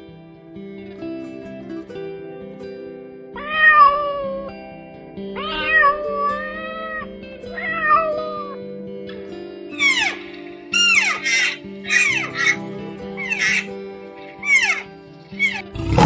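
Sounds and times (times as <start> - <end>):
background music with plucked notes: 0.0 - 16.0
cat meowing: 5.4 - 7.0, 7.6 - 8.2, 10.8 - 12.6, 13.2 - 13.7, 14.4 - 16.0.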